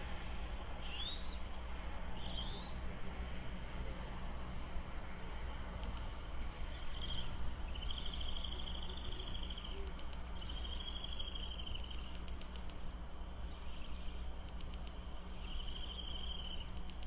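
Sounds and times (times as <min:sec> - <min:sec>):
steady low hum: 0:00.0 - 0:17.0
faint clicks: 0:05.8 - 0:06.1, 0:08.2 - 0:12.8, 0:14.4 - 0:17.0.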